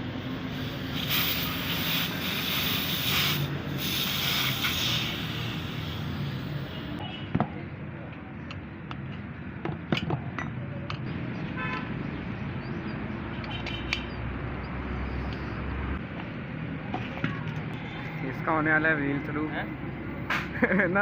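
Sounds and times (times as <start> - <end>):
street traffic: 0.0 - 21.0
vehicle horn toot: 6.7 - 7.3, 11.6 - 11.9, 13.4 - 14.1.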